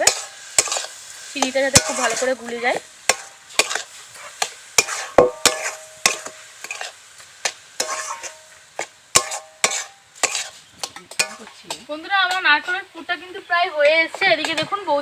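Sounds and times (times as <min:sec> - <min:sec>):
spatula scraping and knocking pan: 0:00.0 - 0:12.8, 0:14.1 - 0:15.0
faint sizzle from pan: 0:00.0 - 0:15.0.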